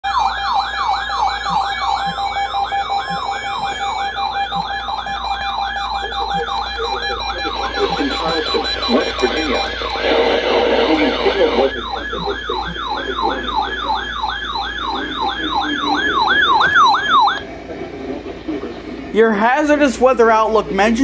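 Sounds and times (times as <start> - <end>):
electronic siren yelping: 0.0 - 17.4.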